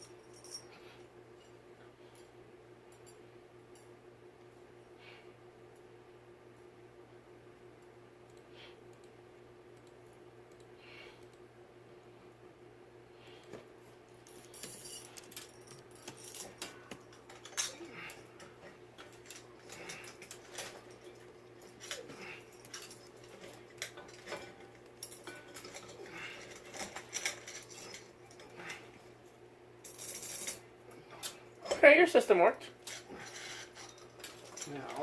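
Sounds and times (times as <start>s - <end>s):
faint steady hum: 0.0s - 35.0s
small metal parts clinking: 14.2s - 29.0s, 29.8s - 30.6s, 32.8s - 35.0s.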